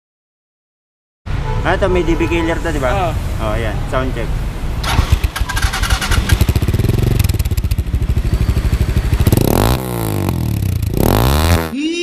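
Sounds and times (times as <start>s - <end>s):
motorcycle idling and revving: 4.7s - 11.7s.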